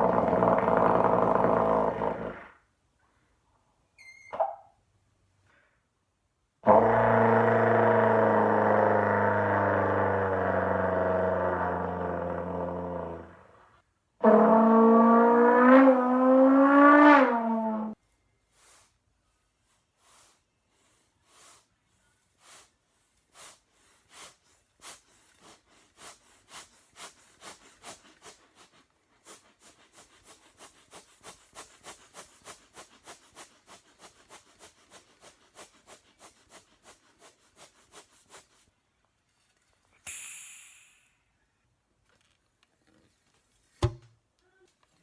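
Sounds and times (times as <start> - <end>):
rushing hiss of air: 40.1 - 41.3.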